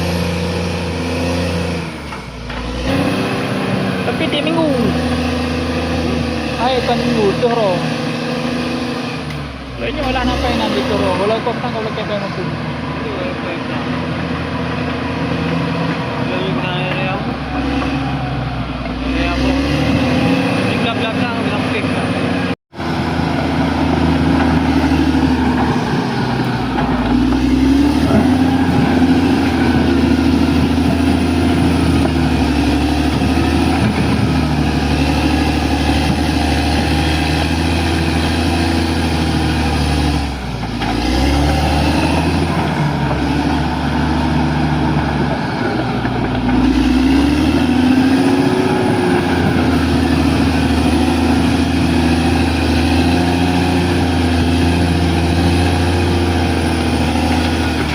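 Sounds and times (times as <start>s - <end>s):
bulldozer diesel engine working: 0.0s - 57.9s.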